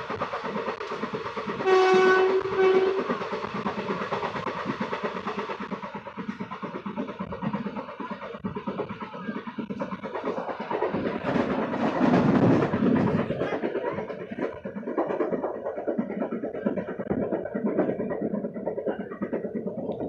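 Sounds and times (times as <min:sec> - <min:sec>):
train rumble: 0:00.0 - 0:20.0
train wheels clattering: 0:00.0 - 0:20.0.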